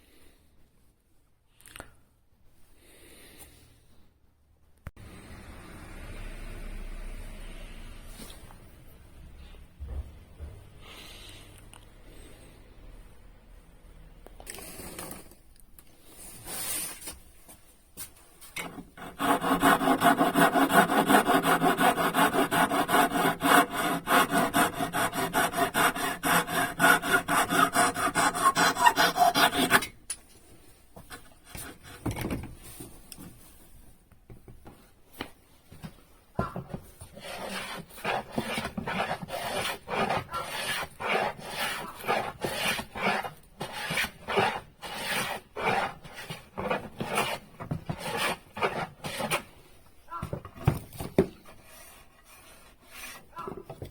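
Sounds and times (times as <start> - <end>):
hand tool scraping wood: 18.6 - 30.0, 37.1 - 49.5, 51.4 - 53.5.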